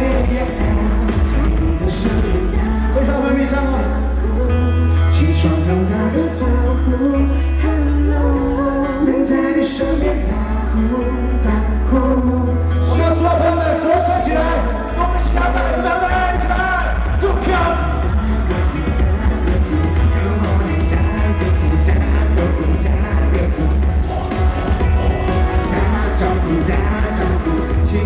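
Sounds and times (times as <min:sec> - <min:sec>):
drums: 0:00.0 - 0:03.9, 0:15.2 - 0:28.0
bass line: 0:00.0 - 0:28.0
person singing: 0:00.0 - 0:28.0.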